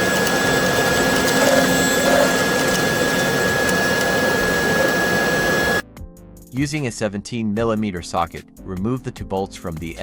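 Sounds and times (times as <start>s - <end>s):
printer whirring with high whine: 0.0s - 5.8s.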